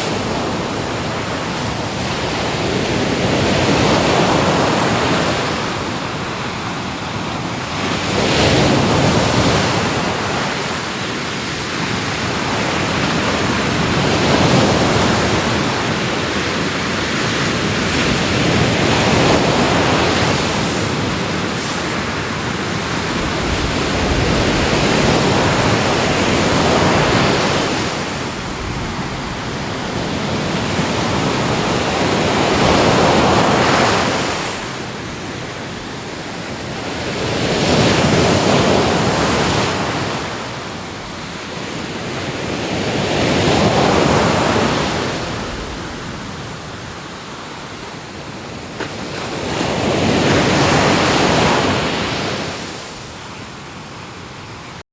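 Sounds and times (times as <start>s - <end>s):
ocean waves breaking on shore: 0.0s - 54.8s.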